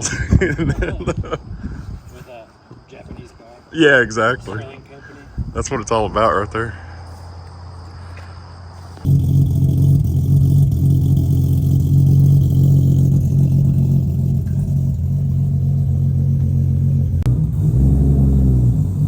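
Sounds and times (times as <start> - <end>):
car engine revving: 9.0 - 19.0.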